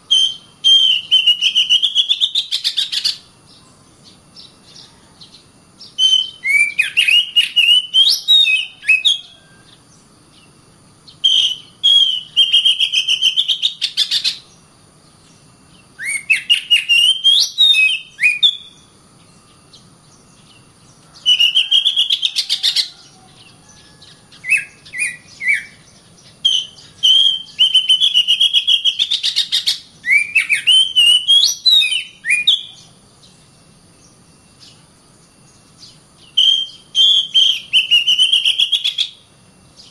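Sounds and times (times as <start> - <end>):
bird singing whistles and chatter: 0.0 - 3.8, 4.7 - 9.9, 11.1 - 14.6, 16.0 - 18.9, 21.1 - 32.9, 35.9 - 39.2.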